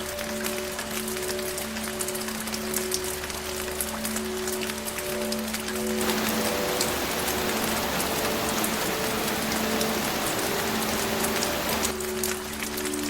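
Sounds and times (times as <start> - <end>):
heavy rain hiss: 6.0 - 12.0.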